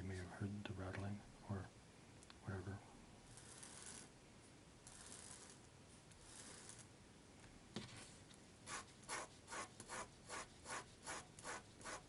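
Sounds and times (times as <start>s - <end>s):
rubbing strokes on paper: 7.8s - 12.0s.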